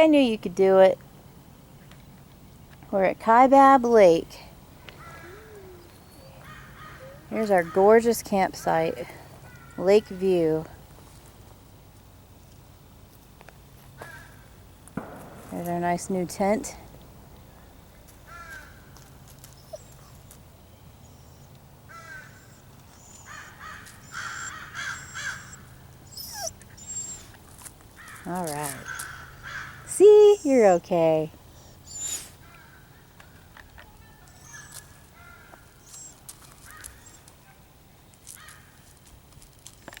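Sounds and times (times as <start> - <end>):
distant bird calls: 4.6 - 10.4, 13.9 - 30.8, 31.4 - 37.4
crow cawing: 5.0 - 5.7, 6.4 - 7.2, 18.3 - 18.8, 21.9 - 22.6, 23.2 - 25.6, 28.8 - 29.9
footsteps on gravel: 14.9 - 19.6, 27.4 - 29.2.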